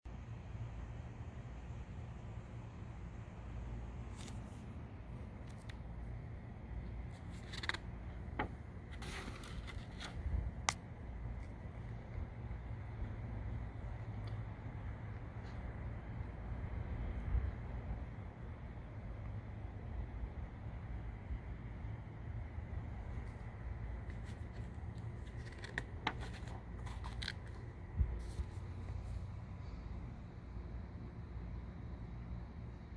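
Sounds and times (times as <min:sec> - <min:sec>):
low steady rumble: 0:00.1 - 0:32.9
paper rustling: 0:07.1 - 0:10.2, 0:24.0 - 0:29.0.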